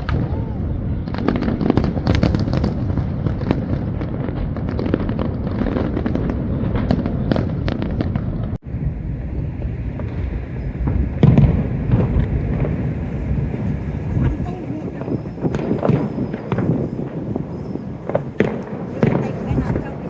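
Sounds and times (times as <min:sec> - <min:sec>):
firework burst: 0:00.0 - 0:20.0
fireworks crackling and banging: 0:00.0 - 0:20.0
low rumble: 0:06.4 - 0:20.0.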